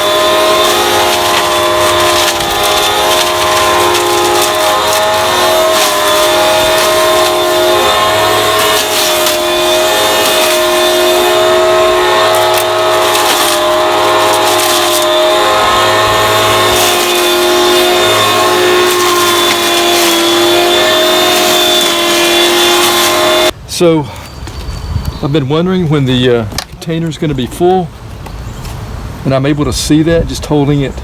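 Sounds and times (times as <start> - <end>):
electric hedge trimmer whining: 0.0 - 23.6.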